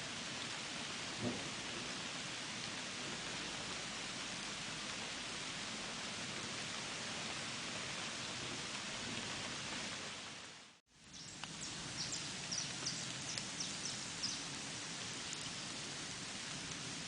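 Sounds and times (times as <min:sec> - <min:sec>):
rain hissing: 0:00.0 - 0:17.0
bird chirping: 0:11.1 - 0:14.4.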